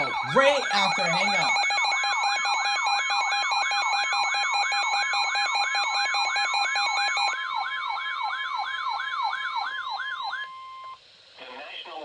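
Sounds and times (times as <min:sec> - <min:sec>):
steady high alert tone: 0:00.0 - 0:01.7
pulsing beeps: 0:00.0 - 0:02.7.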